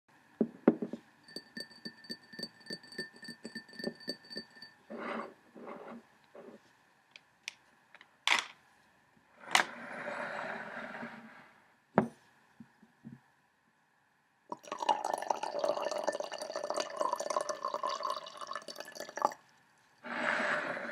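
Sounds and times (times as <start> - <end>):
clinking on ceramic teacup: 1.3 - 5.3.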